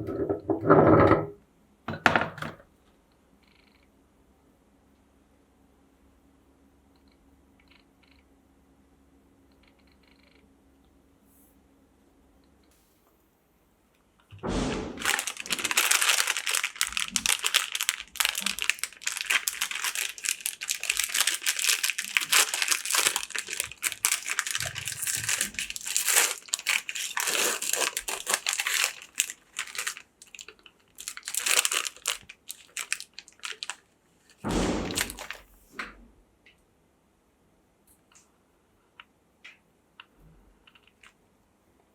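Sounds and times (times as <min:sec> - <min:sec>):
ice cream wrapper crinkling: 0:15.0 - 0:35.5.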